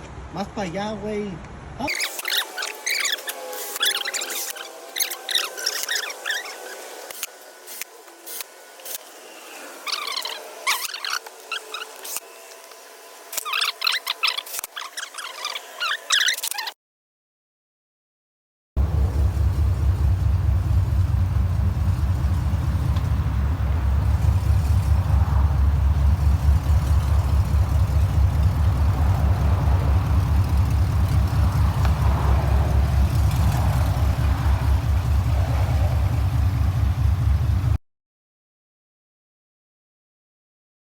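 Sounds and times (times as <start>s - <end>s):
truck engine idling: 18.8s - 37.8s.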